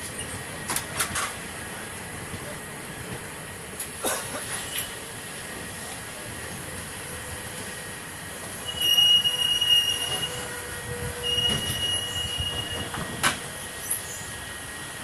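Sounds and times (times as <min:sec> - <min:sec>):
train running noise: 0:00.0 - 0:15.0
train wheels squealing on rails: 0:04.4 - 0:05.2, 0:07.0 - 0:15.0.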